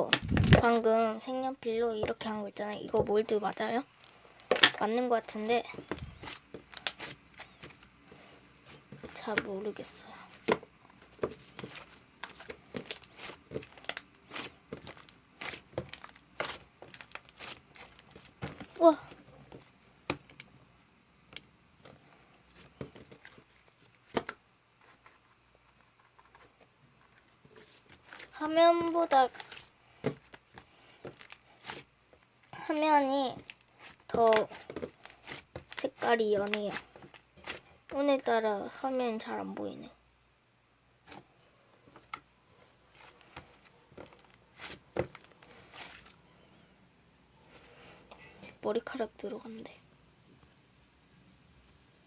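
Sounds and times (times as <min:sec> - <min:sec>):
slime squelching: 0:00.0 - 0:01.1, 0:02.8 - 0:20.4, 0:27.5 - 0:38.3, 0:42.8 - 0:46.4.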